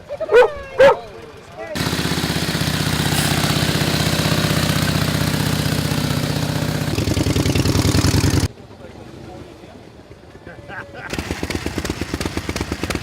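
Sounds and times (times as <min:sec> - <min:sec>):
motorcycle engine running: 0:00.8 - 0:08.5, 0:11.1 - 0:13.0.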